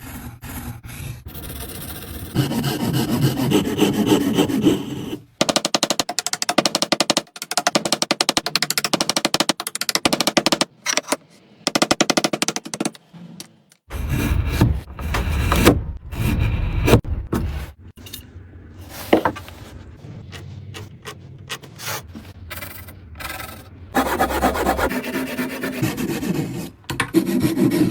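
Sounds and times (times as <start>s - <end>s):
tool rasping wood: 0.0s - 5.6s, 20.0s - 27.9s.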